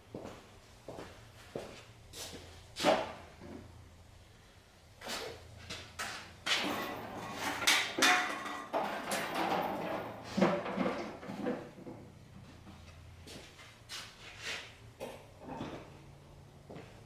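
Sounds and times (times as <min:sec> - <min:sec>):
metal equipment clunking and scraping: 0:06.0 - 0:12.1.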